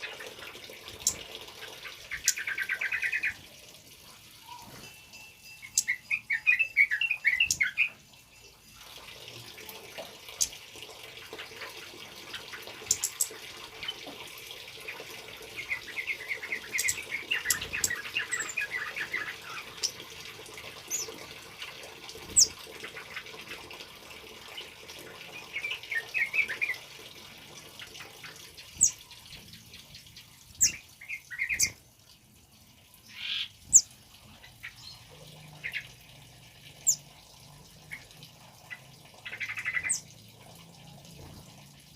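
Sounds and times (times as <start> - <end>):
trickle of water: 0.0 - 41.9
songbird chattering song: 5.6 - 8.0.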